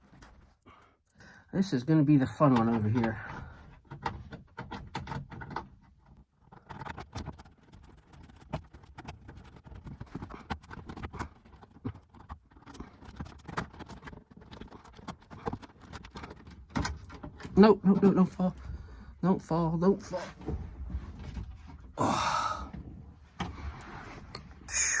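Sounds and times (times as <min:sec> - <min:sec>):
plastic trim panel clicks and scrapes: 0:02.5 - 0:17.6.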